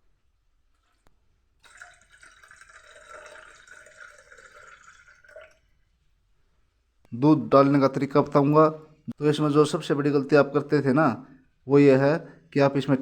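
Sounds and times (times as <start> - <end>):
milk pouring: 0.7 - 6.0.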